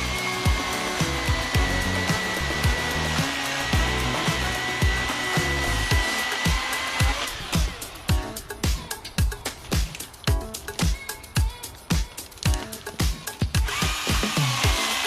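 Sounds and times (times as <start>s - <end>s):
chainsaw motor whining: 0.0s - 8.1s, 13.6s - 15.0s
background music with beat: 0.0s - 15.0s.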